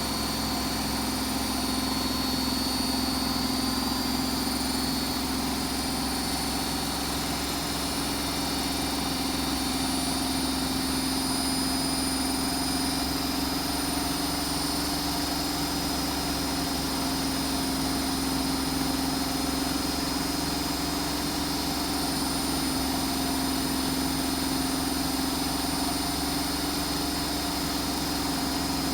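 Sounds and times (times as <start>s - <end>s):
washing machine spinning: 0.0s - 28.9s.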